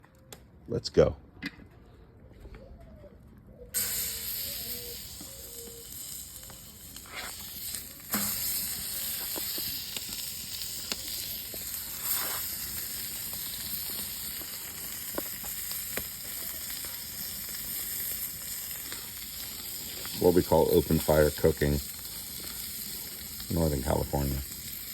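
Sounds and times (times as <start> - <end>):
sharp popping: 3.8 - 20.6
scallops sizzling on hot surface: 3.8 - 24.9.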